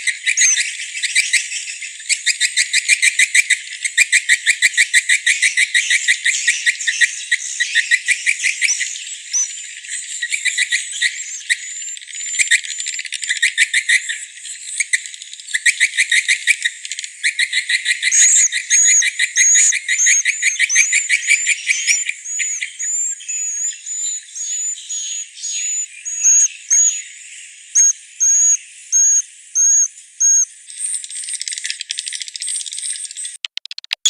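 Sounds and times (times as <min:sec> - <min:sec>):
rapid chatter of bird chirps: 0:00.0 - 0:34.0.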